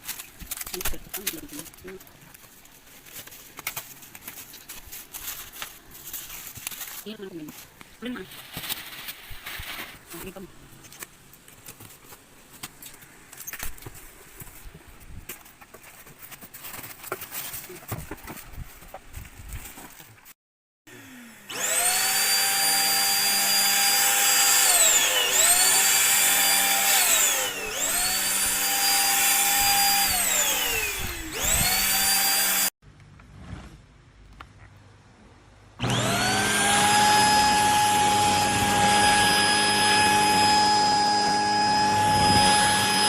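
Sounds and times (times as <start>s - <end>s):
handheld vacuum cleaner whine: 20.9s - 32.8s, 35.8s - 43.0s.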